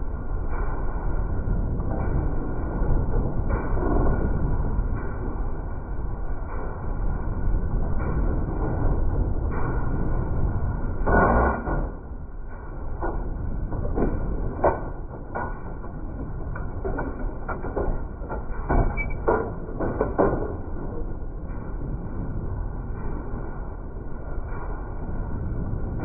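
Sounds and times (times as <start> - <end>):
farm machinery rumbling: 7.4 - 26.0
knocks and clanks: 11.0 - 23.6.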